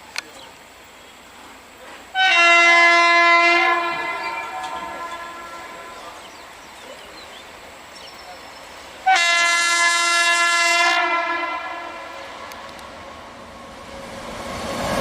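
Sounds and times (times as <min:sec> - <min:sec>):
passing train running noise: 0:00.0 - 0:15.0
locomotive horn blast: 0:02.1 - 0:06.5, 0:09.0 - 0:12.7.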